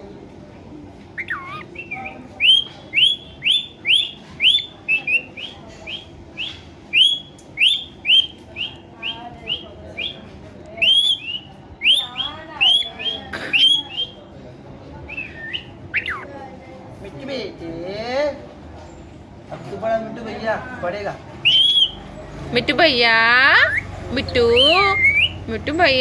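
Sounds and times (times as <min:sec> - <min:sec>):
parakeet chirping: 0:01.2 - 0:10.2, 0:15.1 - 0:16.3, 0:21.4 - 0:22.0, 0:23.2 - 0:26.0.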